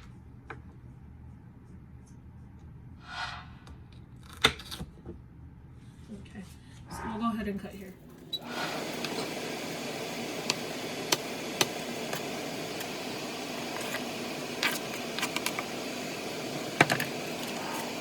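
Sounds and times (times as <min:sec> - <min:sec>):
steady hiss: 0:08.4 - 0:18.0.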